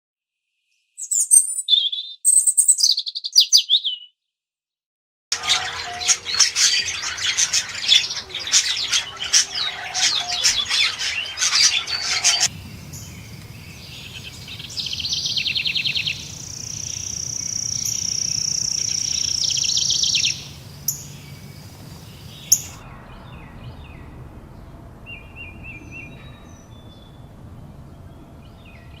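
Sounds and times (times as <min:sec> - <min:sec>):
small birds chirping: 0:00.9 - 0:04.2, 0:05.4 - 0:29.0
bird trills: 0:01.0 - 0:04.1, 0:05.4 - 0:24.1.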